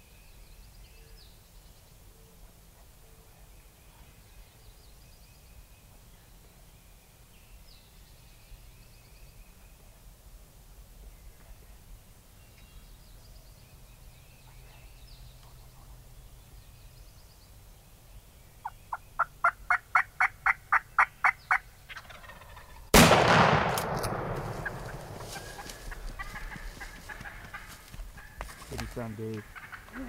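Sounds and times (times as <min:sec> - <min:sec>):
shotgun blast echoing: 0:22.9 - 0:26.0
wild turkey yelps: 0:24.5 - 0:28.7.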